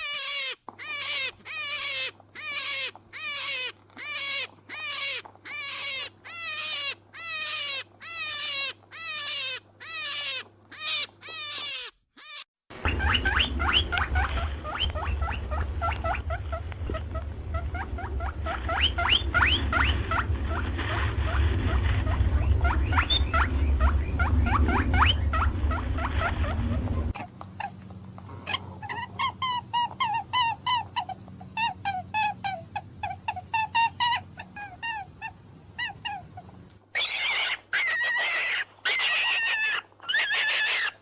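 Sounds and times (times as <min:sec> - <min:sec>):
animal squeaking calls: 0:00.0 - 0:41.0
quiet repeated animal call: 0:00.0 - 0:41.0
low rumble: 0:12.7 - 0:27.2.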